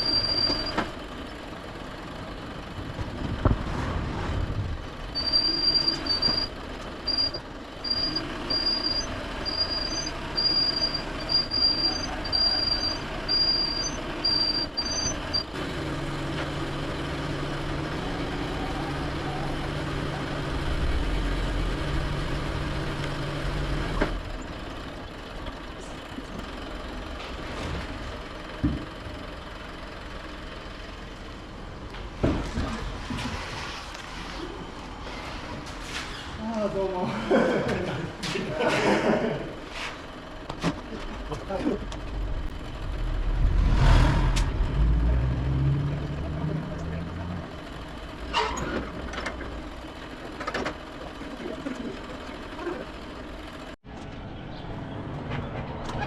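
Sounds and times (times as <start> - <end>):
truck reversing beeper: 0.0 - 1.3, 5.1 - 15.6
truck engine rumbling: 0.0 - 56.0.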